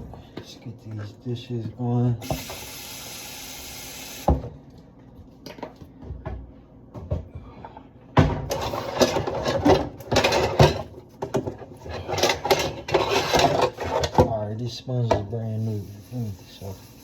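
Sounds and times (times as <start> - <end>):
dishes clattering in sink: 8.2 - 14.4.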